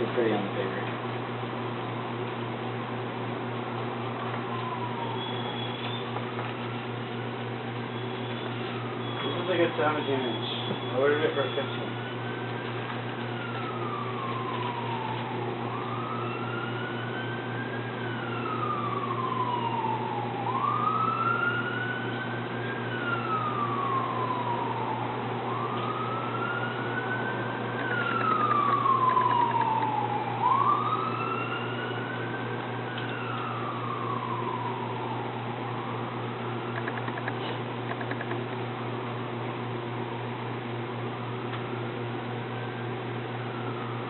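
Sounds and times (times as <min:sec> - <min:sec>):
siren wailing: 0:04.1 - 0:07.0, 0:07.8 - 0:37.3, 0:42.4 - 0:44.0.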